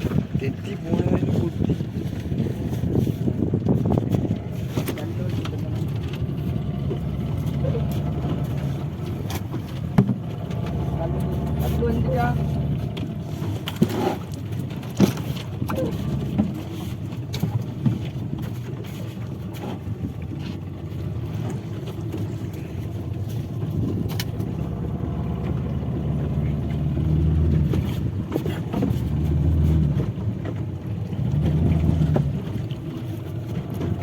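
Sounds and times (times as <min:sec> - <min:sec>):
boat engine rumbling: 0:00.0 - 0:34.0
knocks and clatter: 0:09.2 - 0:10.8.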